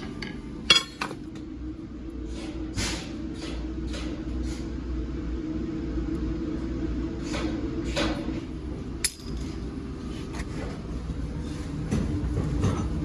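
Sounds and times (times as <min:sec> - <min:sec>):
forge humming: 0:00.0 - 0:13.0.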